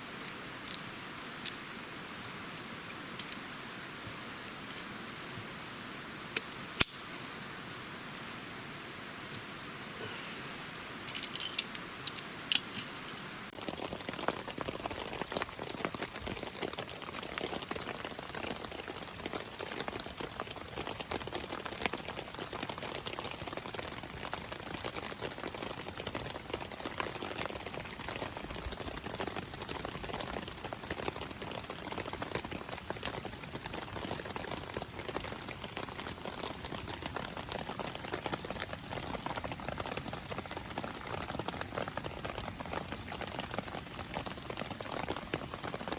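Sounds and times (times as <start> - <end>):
campfire crackling and popping: 6.2 - 7.3, 13.5 - 45.9.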